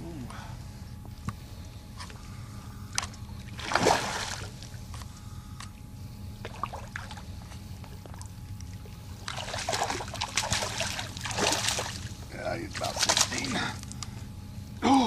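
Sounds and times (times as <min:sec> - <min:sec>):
fish splashing at the surface: 0:09.2 - 0:12.1.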